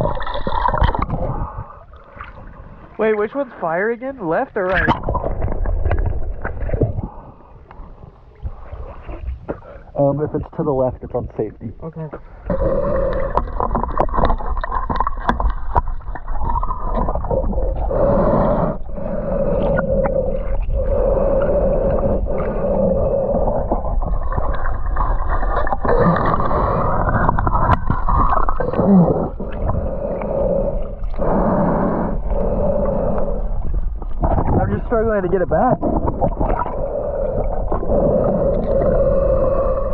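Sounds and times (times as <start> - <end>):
muffled underwater gurgling: 0.0 - 39.9.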